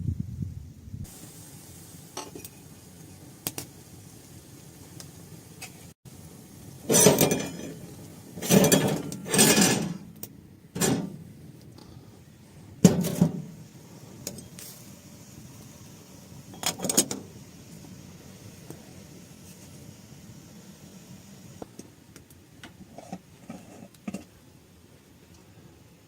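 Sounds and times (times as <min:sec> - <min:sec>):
dishes and utensils clattering: 0:06.9 - 0:07.8, 0:08.4 - 0:10.0.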